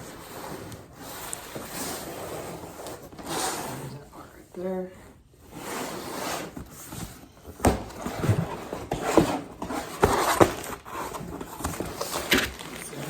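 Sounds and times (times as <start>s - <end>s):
plastic bags rustling: 10.5s - 13.0s.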